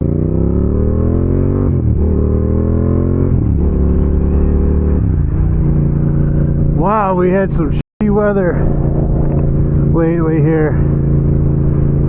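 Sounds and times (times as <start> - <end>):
motorcycle engine accelerating: 0.0 - 12.0
wind rush: 8.4 - 12.0.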